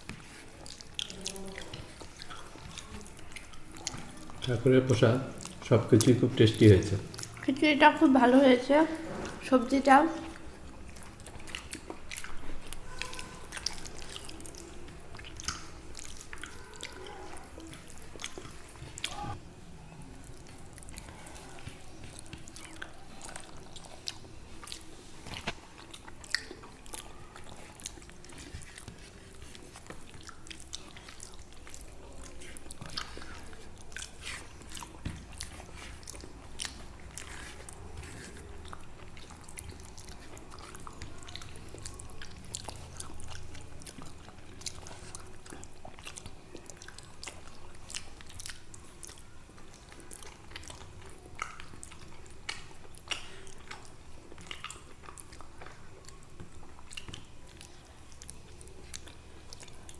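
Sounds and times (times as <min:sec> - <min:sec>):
people chewing: 0:00.0 - 0:59.9
wet mouth clicks and smacks: 0:13.1 - 0:17.0, 0:20.3 - 0:27.2, 0:49.8 - 0:59.8.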